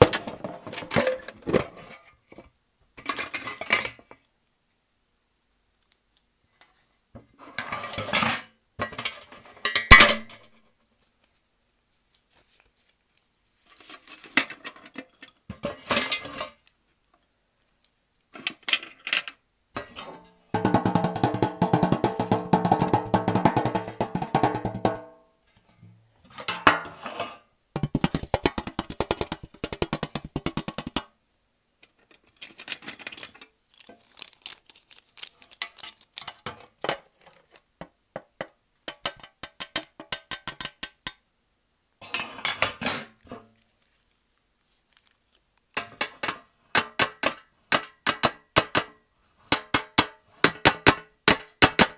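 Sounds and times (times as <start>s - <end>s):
small objects scraping: 7.4s - 8.4s, 32.1s - 37.7s
taps on small objects: 27.8s - 31.1s, 37.8s - 41.2s.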